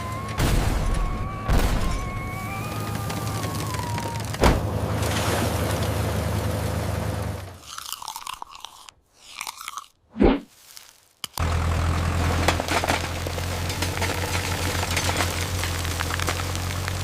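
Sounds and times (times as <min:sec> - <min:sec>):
crunching and crackling: 0:00.0 - 0:05.9, 0:07.6 - 0:17.0
tractor engine running: 0:00.0 - 0:07.7, 0:11.4 - 0:17.0.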